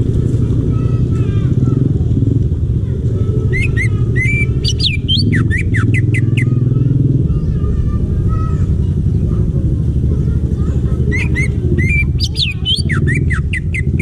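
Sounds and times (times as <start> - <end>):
steady low rumble: 0.0 - 14.0
bird singing whistled notes: 3.5 - 6.5, 11.1 - 14.0.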